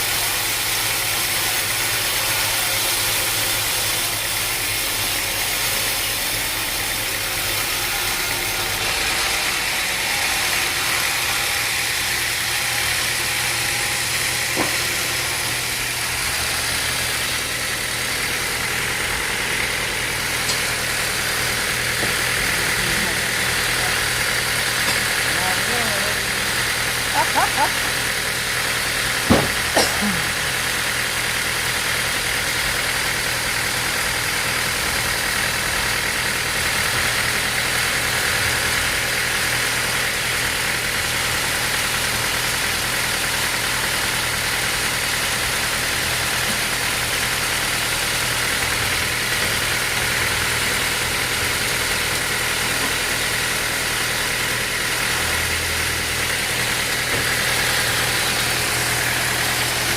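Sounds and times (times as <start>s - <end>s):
sawmill machinery humming: 0.0s - 59.9s.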